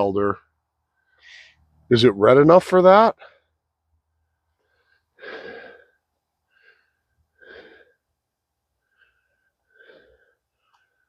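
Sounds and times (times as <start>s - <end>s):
man breathing out heavily: 4.7s - 8.2s, 8.8s - 11.0s.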